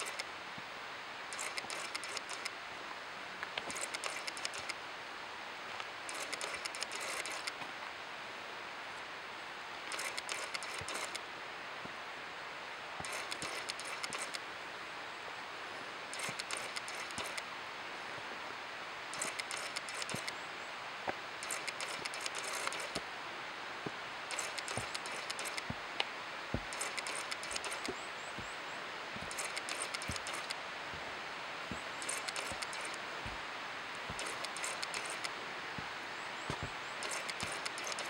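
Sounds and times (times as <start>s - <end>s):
high-pitched crackling clicks: 0.0s - 0.3s, 1.3s - 2.6s, 3.4s - 4.8s, 5.8s - 7.6s, 9.8s - 11.2s, 13.0s - 14.4s, 16.1s - 17.5s, 19.1s - 20.4s, 21.4s - 23.1s, 24.3s - 28.5s, 29.2s - 30.6s, 31.7s - 35.9s, 36.5s - 38.0s.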